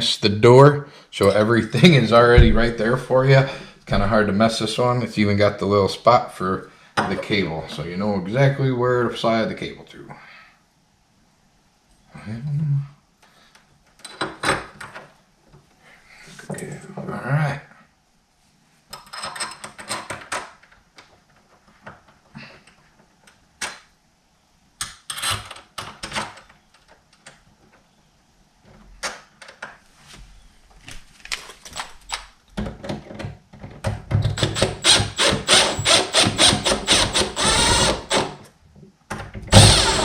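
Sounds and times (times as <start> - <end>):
lock parts clicking and rattling: 18.9 - 23.8
cordless power driver running: 34.4 - 38.3, 39.5 - 40.0.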